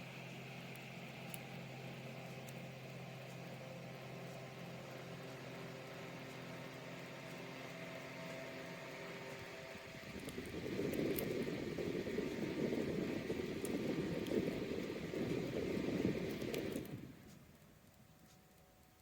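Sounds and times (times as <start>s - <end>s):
desk fan humming: 0.0s - 19.0s.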